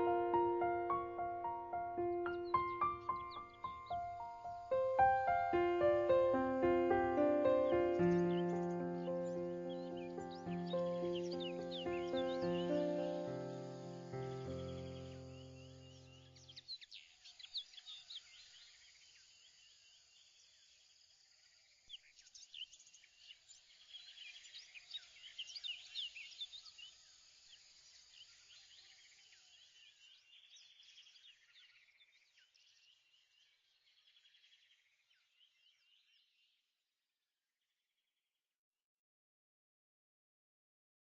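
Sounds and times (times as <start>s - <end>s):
birds chirping: 0.0s - 16.6s.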